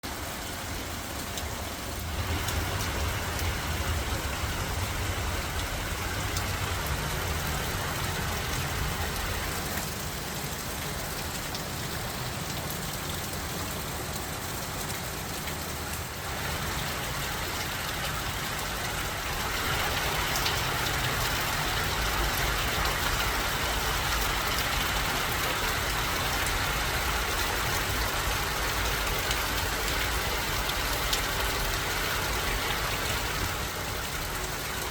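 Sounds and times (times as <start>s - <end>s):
heavy rain pouring: 0.0s - 34.9s
low rumble: 1.5s - 10.3s.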